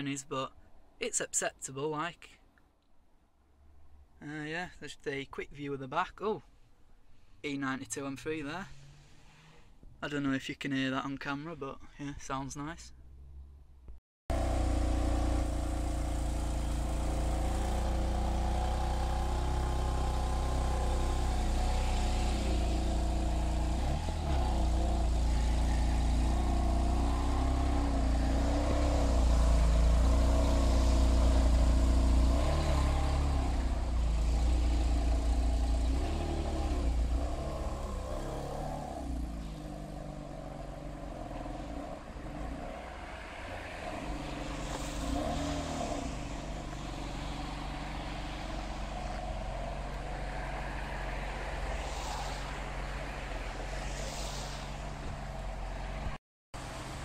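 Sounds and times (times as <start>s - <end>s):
car engine idling and revving: 13.1s - 57.0s.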